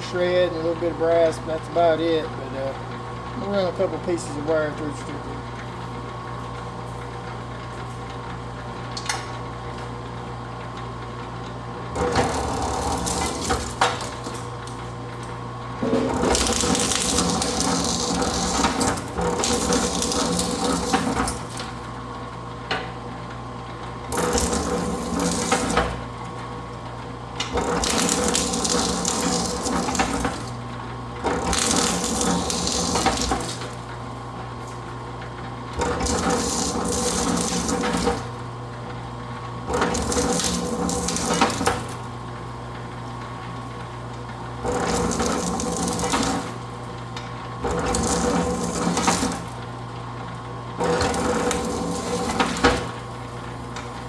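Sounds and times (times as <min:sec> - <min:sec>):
wire stripper humming: 0:11.9 - 0:22.1, 0:24.0 - 0:34.9, 0:35.7 - 0:38.6, 0:39.4 - 0:43.2, 0:43.8 - 0:49.8
wire fed through rollers: 0:11.9 - 0:54.0.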